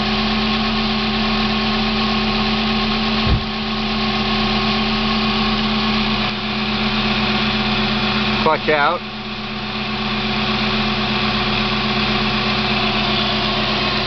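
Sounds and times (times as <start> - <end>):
car engine idling: 0.0 - 14.0
low thump: 3.2 - 3.7.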